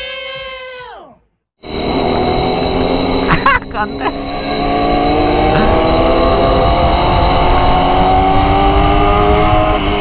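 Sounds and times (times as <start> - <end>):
motorcycle engine accelerating: 1.9 - 10.0
wind rumble on microphone: 3.8 - 10.0.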